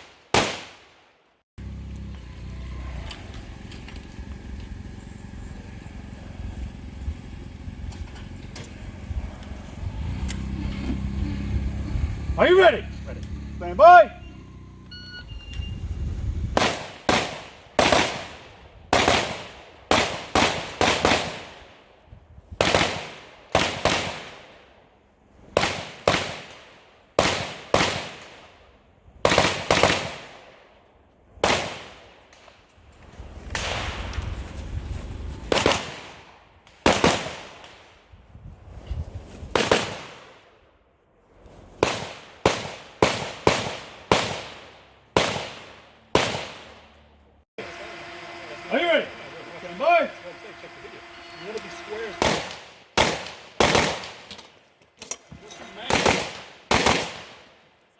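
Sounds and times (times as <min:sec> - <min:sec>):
rifle shots with echo: 0:00.0 - 0:01.2, 0:16.6 - 0:21.8, 0:22.6 - 0:24.6, 0:25.6 - 0:28.6, 0:29.2 - 0:30.6, 0:31.4 - 0:32.5, 0:35.5 - 0:37.9, 0:39.6 - 0:40.4, 0:41.8 - 0:46.9, 0:52.0 - 0:54.3, 0:55.9 - 0:57.6.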